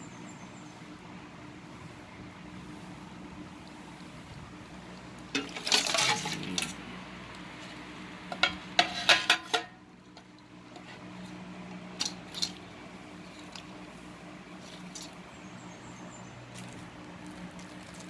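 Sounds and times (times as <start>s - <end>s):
utensils and dishes clattering: 5.3s - 6.9s, 8.3s - 9.8s, 12.0s - 12.6s.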